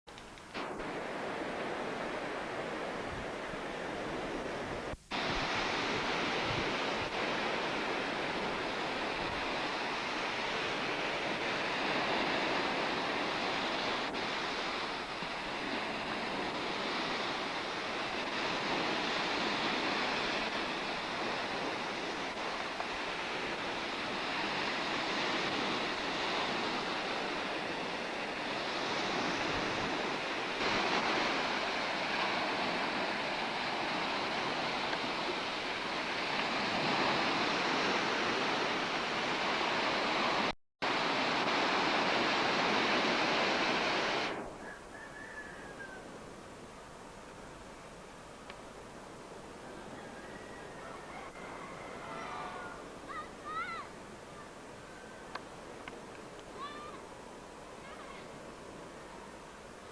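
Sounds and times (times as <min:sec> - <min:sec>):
sea surf: 0:00.1 - 0:59.9
wind noise on microphone: 0:00.2 - 0:59.9.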